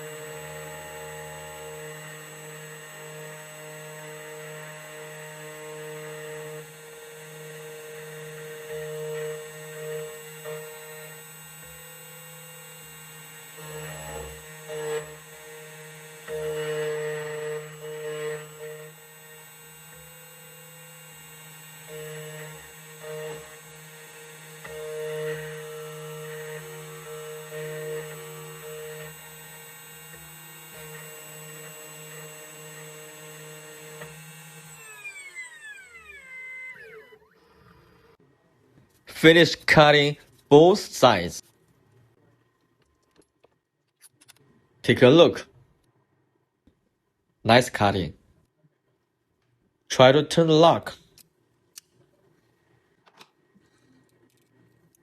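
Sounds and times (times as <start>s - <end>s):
key cutting machine whine: 0.0s - 38.2s.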